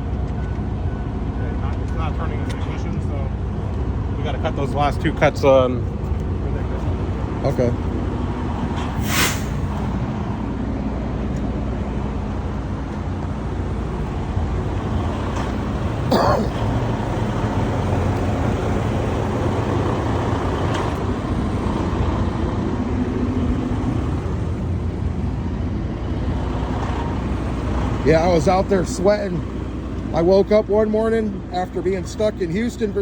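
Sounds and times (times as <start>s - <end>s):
vehicle engine idling: 0.0s - 33.0s
short sharp sound: 8.9s - 9.8s.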